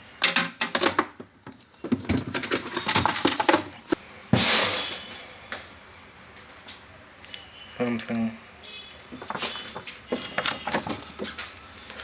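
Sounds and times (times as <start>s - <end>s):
plastic parts clicking: 0.2s - 4.0s, 9.1s - 11.7s
packaging crinkle: 0.8s - 4.0s, 9.0s - 12.0s.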